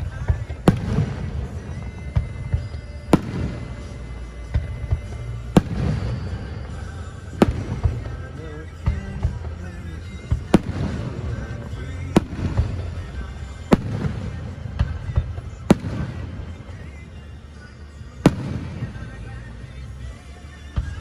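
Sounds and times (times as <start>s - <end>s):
background music: 0.0s - 21.0s
fireworks bangs: 0.0s - 21.0s.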